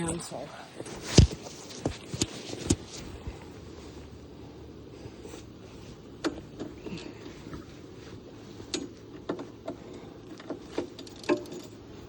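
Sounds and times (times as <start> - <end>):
wrench metallic clicks and clanks: 10.4 - 11.8.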